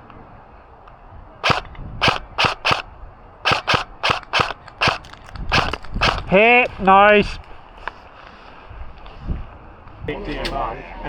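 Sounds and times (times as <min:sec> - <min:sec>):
airsoft gun firing single shots: 0:01.4 - 0:06.6.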